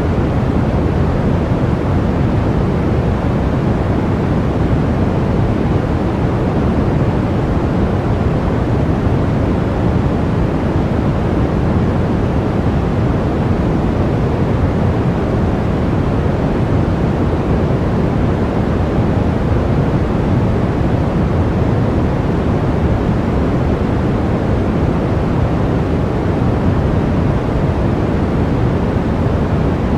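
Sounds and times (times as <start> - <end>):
blizzard wind blowing hard: 0.0 - 29.9.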